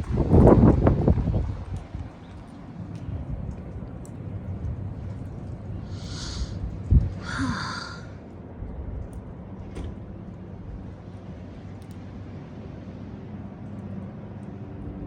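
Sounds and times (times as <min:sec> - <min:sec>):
wind rumble on microphone: 0:00.0 - 0:15.0
person exhaling: 0:05.9 - 0:06.6, 0:07.2 - 0:08.2.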